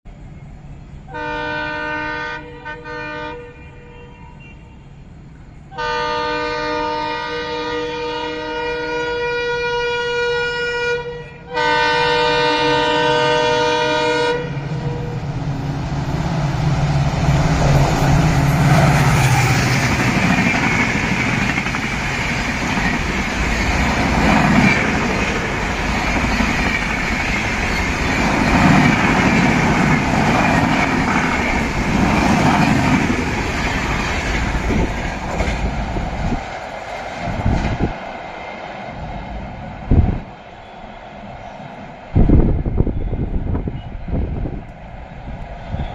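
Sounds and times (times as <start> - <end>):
locomotive horn chord: 1.1 - 4.8, 5.8 - 15.2
locomotive engine rumbling: 12.0 - 45.9
train wheels clattering on rail: 16.0 - 38.3.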